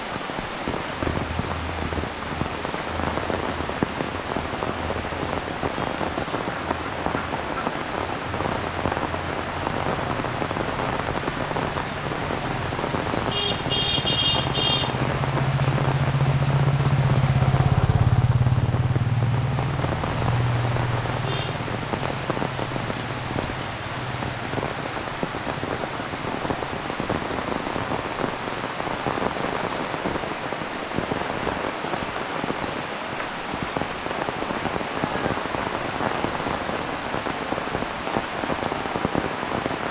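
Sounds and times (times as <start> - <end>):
heavy rain falling: 0.0 - 39.9
vehicle passing: 13.6 - 24.4.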